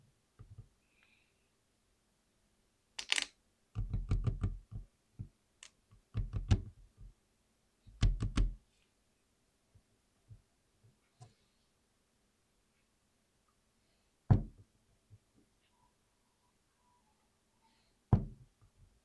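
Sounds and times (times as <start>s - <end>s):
keyboard rattle: 3.0s - 3.3s
mechanical keyboard typing: 3.0s - 3.3s.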